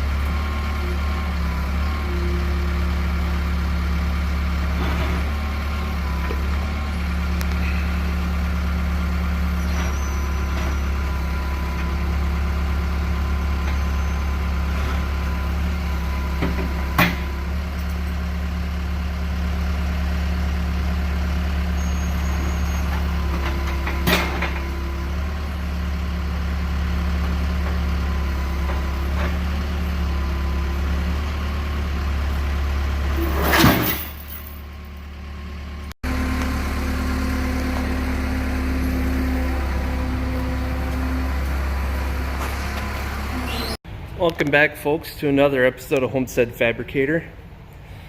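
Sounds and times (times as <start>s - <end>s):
large vehicle engine idling: 0.0s - 45.2s.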